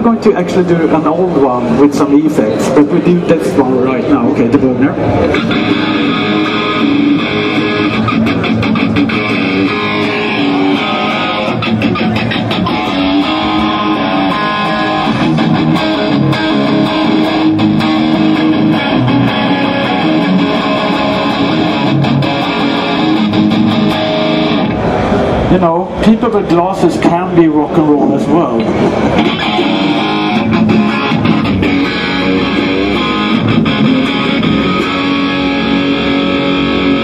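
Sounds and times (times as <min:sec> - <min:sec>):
electric guitar playing rock: 0:04.9 - 0:25.5, 0:28.6 - 0:37.0.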